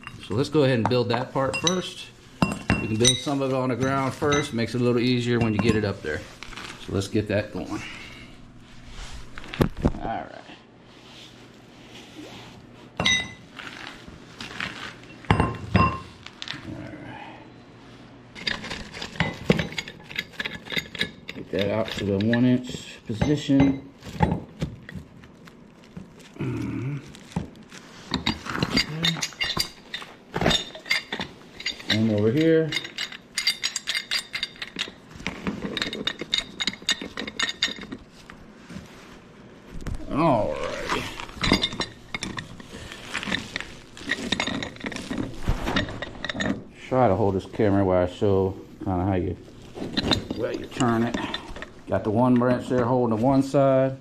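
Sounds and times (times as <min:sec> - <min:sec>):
metal pipes clinking: 0:00.0 - 0:08.0, 0:13.0 - 0:13.4, 0:15.1 - 0:16.1, 0:18.4 - 0:25.0, 0:28.1 - 0:38.4, 0:40.3 - 0:53.8.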